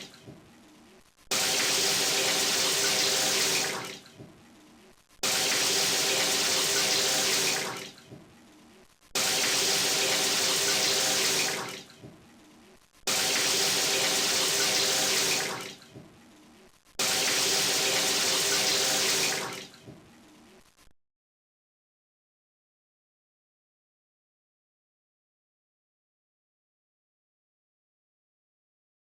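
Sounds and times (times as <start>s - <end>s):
shower water running: 1.3s - 4.2s, 5.2s - 8.1s, 9.2s - 12.1s, 13.1s - 15.9s, 17.0s - 19.8s.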